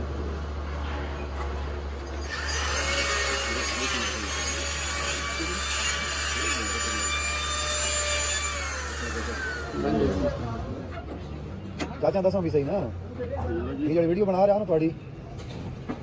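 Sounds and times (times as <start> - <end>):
power tool motor whine: 2.1 - 10.0.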